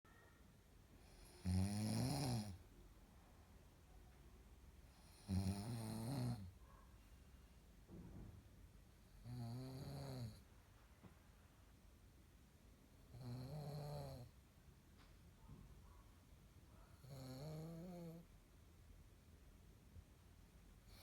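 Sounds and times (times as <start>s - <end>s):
man snoring: 1.1s - 2.6s, 5.0s - 6.5s, 9.2s - 10.4s, 13.1s - 14.3s, 17.0s - 18.2s.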